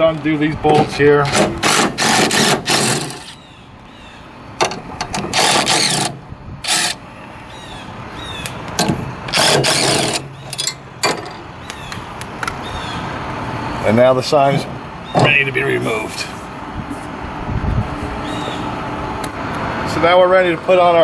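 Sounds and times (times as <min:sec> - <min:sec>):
steady low hum: 0:00.0 - 0:20.7
wrench clicking and rattling: 0:01.6 - 0:03.4, 0:05.4 - 0:07.0, 0:09.3 - 0:10.8.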